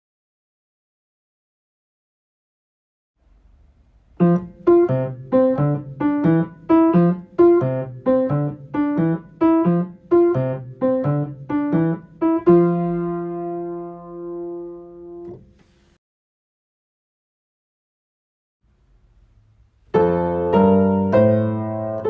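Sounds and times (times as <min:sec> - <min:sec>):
piano playing: 0:04.2 - 0:15.4, 0:19.9 - 0:22.0.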